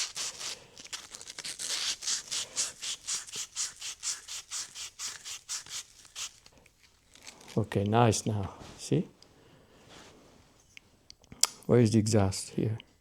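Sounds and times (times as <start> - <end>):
hand deburring rubbing strokes: 1.5 - 6.5.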